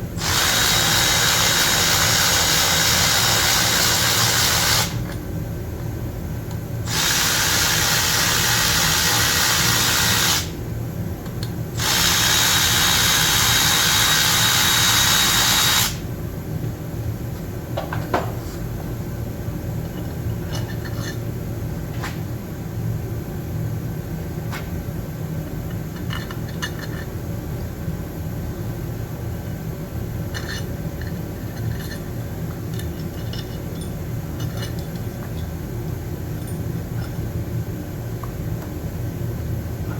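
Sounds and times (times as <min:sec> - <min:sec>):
power tool running: 0:00.2 - 0:05.0, 0:06.9 - 0:10.6, 0:11.8 - 0:16.0
metal parts clicking and tapping: 0:25.7 - 0:27.1, 0:30.3 - 0:35.6.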